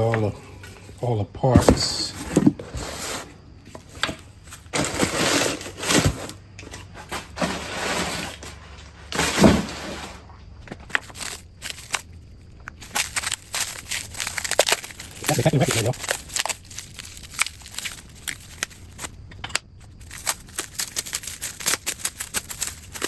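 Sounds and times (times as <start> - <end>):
packaging crinkling and rustling: 1.8 - 10.1, 10.7 - 19.2, 19.8 - 23.0
small plastic parts clicking: 10.8 - 23.0.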